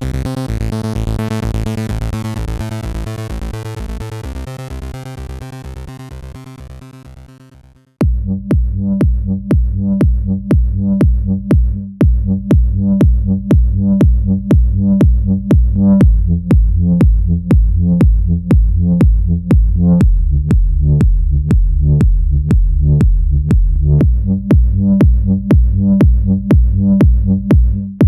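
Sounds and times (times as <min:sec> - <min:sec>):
electronic track with heavy beat: 0:08.0 - 0:28.0.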